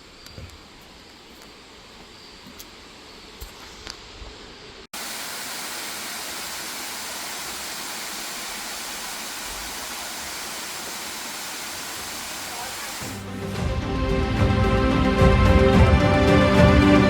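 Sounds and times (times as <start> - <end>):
waterfall rushing: 5.0 - 13.3.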